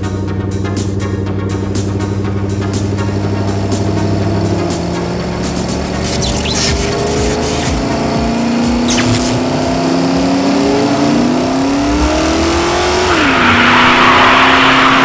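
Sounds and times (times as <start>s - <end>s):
hiss: 5.9s - 7.9s, 8.9s - 9.5s
cartoon engine revving: 5.9s - 8.1s, 8.8s - 12.8s.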